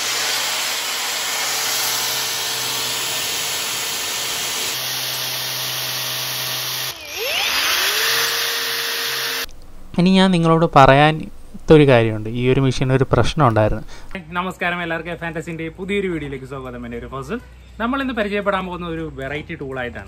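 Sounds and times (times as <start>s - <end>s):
angle grinder motor whine: 0.0s - 9.5s.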